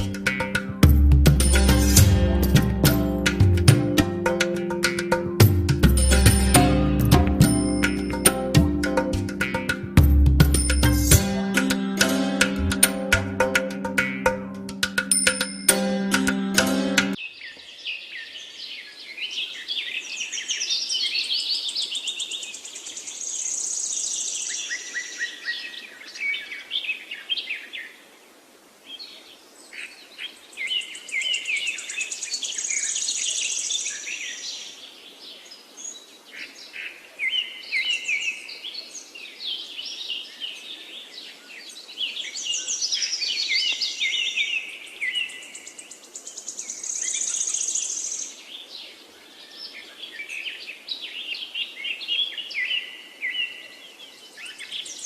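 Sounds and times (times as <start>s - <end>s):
songbirds chirping and trilling: 16.4s - 28.1s, 28.9s - 55.0s.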